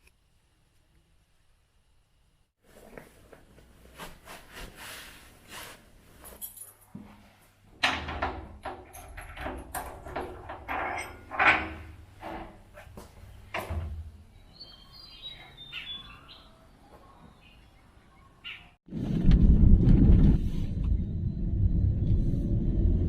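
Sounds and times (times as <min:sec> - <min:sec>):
knocks clicks and rustles: 0:06.3 - 0:14.2.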